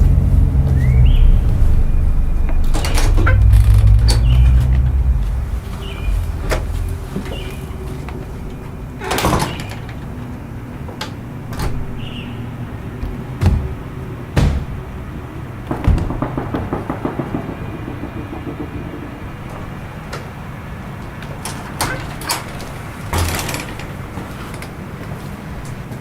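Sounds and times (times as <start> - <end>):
thumps and knocks: 0.0 - 7.8, 13.0 - 20.2
steady low hum: 0.0 - 20.9
rattling taps: 13.0 - 20.4.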